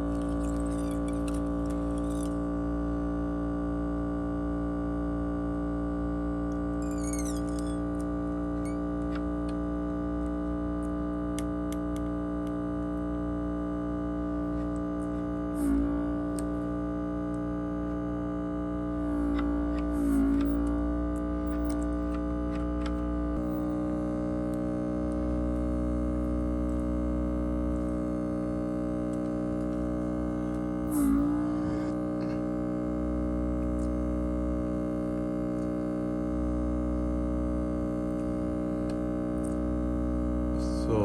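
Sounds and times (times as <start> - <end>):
low hum: 0.0 - 41.0
distorted guitar chords: 6.4 - 34.7.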